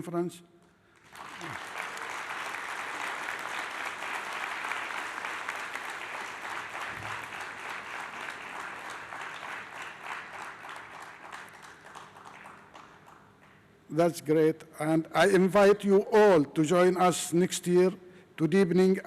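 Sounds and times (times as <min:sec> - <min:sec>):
audience applauding: 0:01.0 - 0:13.4.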